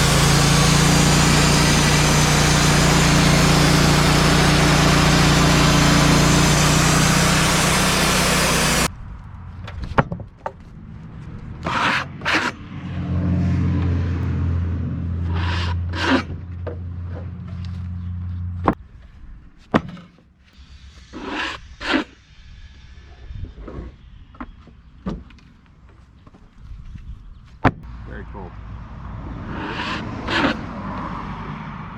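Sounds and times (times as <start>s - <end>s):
sawmill engine and band blade: 0.0s - 8.9s, 11.6s - 18.8s, 27.8s - 31.9s
engine humming quietly: 0.0s - 9.8s.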